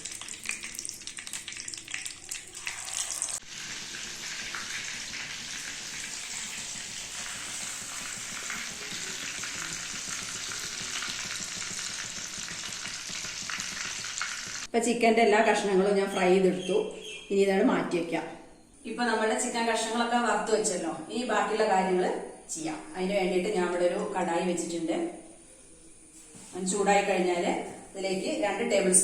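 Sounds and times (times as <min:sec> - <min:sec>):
chicken deep-frying in oil: 0:00.0 - 0:14.7.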